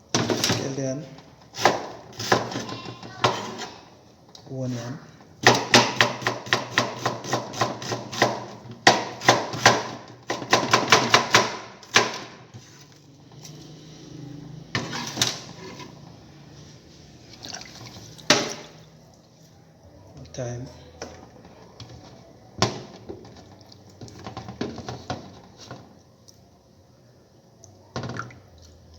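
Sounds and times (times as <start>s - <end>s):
knife chopping on cutting board: 1.6s - 3.7s, 5.4s - 12.4s.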